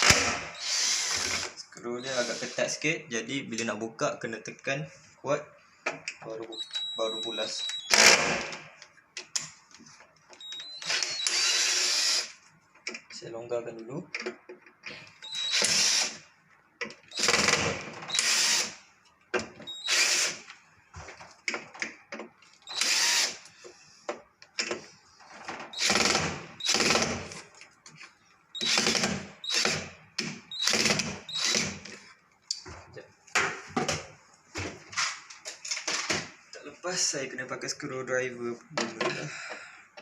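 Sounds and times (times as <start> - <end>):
cordless drill bursts: 0.0 - 2.6, 10.5 - 12.4, 15.2 - 16.2, 17.1 - 18.8, 19.7 - 20.4, 22.6 - 23.4, 25.7 - 27.2, 28.6 - 29.9, 30.5 - 31.8.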